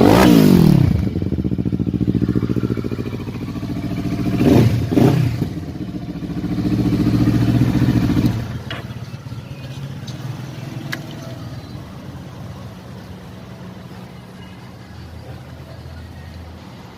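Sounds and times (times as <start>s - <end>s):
motorcycle engine revving: 0.0s - 11.9s.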